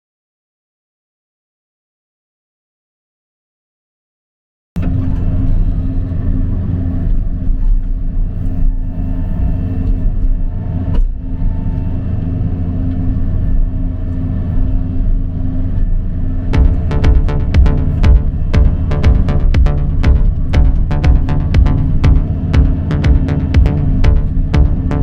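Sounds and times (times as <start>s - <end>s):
diesel engine running: 16.6s - 25.0s.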